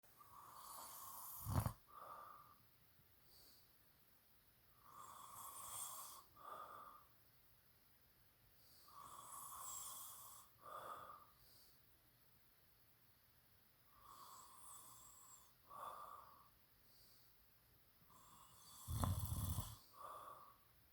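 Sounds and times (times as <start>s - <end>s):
person snoring softly: 0.2s - 2.6s, 4.8s - 7.1s, 8.6s - 11.6s, 13.9s - 16.5s, 18.0s - 20.7s.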